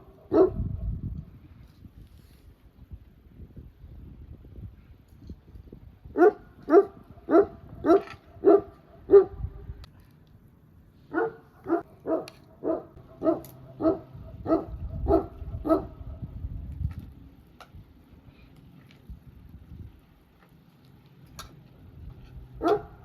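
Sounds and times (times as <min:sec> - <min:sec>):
dog barking: 0:00.0 - 0:00.7, 0:06.2 - 0:09.5, 0:11.1 - 0:16.2, 0:22.6 - 0:23.0.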